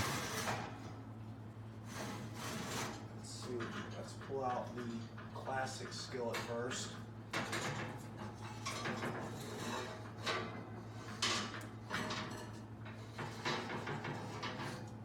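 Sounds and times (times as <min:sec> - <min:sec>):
iron skillet scraping oven rack: 0:01.9 - 0:03.1.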